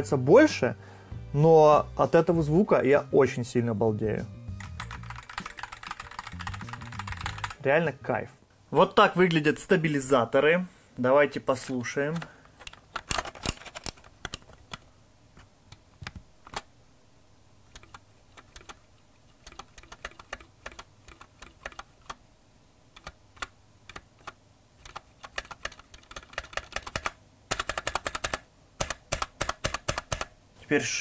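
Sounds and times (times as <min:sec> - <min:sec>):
mechanical keyboard key clicking: 0:04.7 - 0:07.6, 0:17.8 - 0:18.8, 0:19.4 - 0:22.2, 0:23.0 - 0:30.3.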